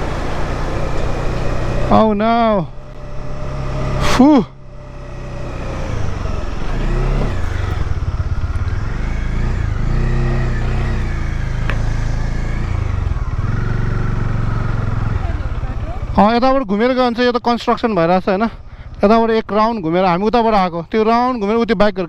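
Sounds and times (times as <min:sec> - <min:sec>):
motorcycle engine revving: 0:00.0 - 0:21.6.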